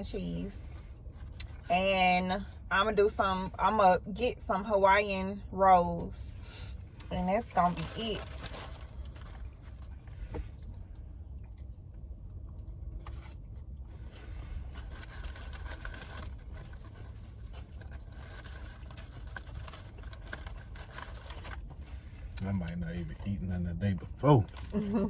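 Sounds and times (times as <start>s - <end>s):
rustles and scrapes: 13.0s - 23.4s.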